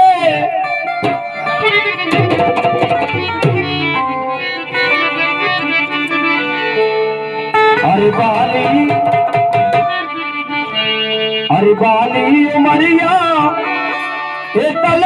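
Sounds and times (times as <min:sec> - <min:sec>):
electronic keyboard melody: 0:00.2 - 0:15.0
drum hits: 0:01.0 - 0:01.5, 0:02.1 - 0:04.0, 0:08.6 - 0:10.0.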